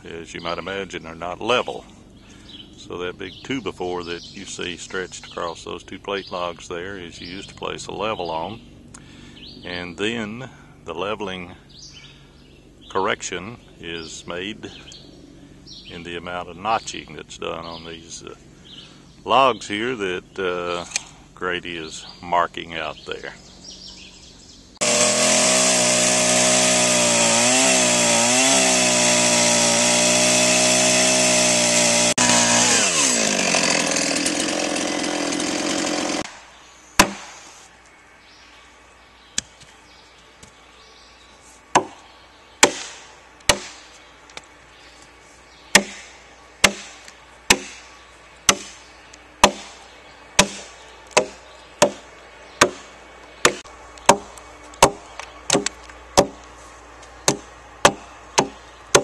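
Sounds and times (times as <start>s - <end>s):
chainsaw cutting log: 24.8s - 36.4s, 37.0s - 37.6s, 42.6s - 43.9s, 45.7s - 59.0s
axe chopping wood: 37.0s - 37.4s, 41.7s - 42.0s, 42.6s - 43.9s, 45.7s - 47.9s, 48.5s - 48.8s, 49.4s - 49.8s, 50.4s - 52.0s, 52.6s - 56.4s, 57.2s - 59.0s.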